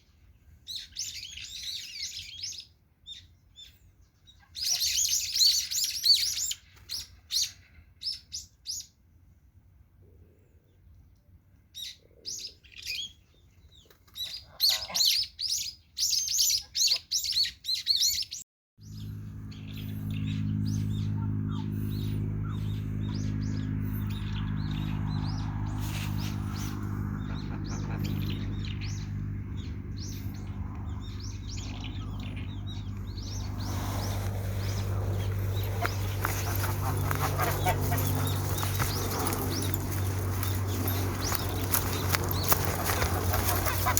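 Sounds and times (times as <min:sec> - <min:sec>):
small birds chirping: 0:11.8 - 0:43.9
steady low hum: 0:18.8 - 0:43.9.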